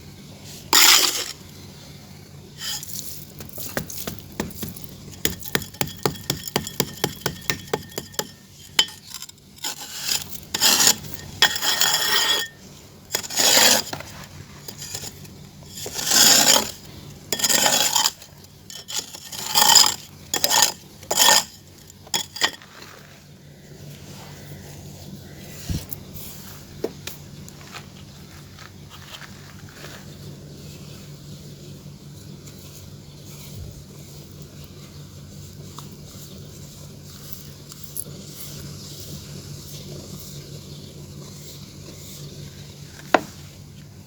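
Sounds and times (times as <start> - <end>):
clay scraping and crumbling: 0.4 - 1.6, 2.6 - 31.4, 32.2 - 44.0
hands tapping clay: 3.4 - 9.0.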